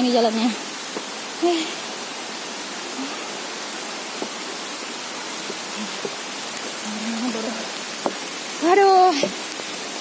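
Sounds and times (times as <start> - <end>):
rain: 0.0 - 10.0
waterfall rushing: 0.0 - 10.0
faint taps: 8.0 - 8.2.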